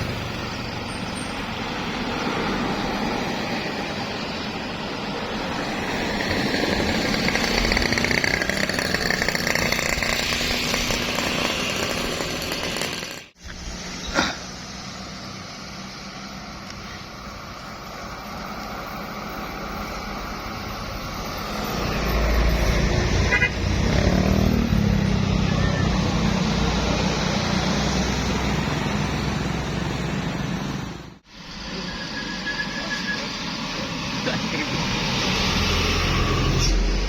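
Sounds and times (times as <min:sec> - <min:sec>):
bus engine passing: 0:00.0 - 0:12.1, 0:13.6 - 0:37.0
horn toots: 0:23.1 - 0:24.2.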